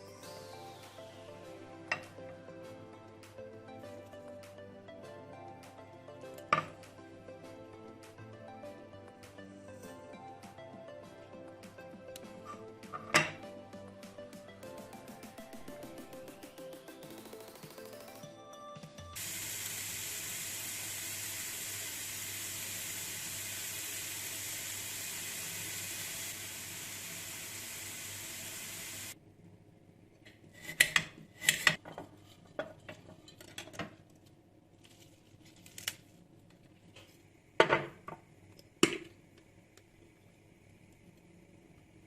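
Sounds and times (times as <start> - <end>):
dishes and utensils clinking: 1.9 - 2.2, 6.4 - 6.8, 12.4 - 13.5, 30.7 - 34.0
steady hiss: 19.2 - 29.2.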